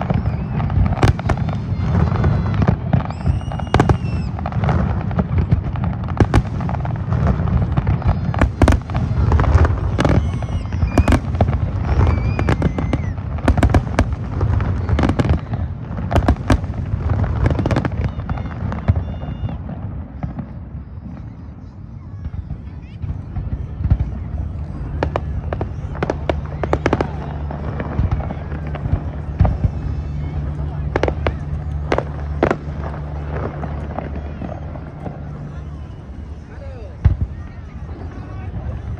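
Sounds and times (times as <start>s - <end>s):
high whistles: 0.0s - 1.5s, 2.9s - 4.5s
fireworks bangs and crackles: 0.0s - 38.9s
low rumble: 22.4s - 38.9s.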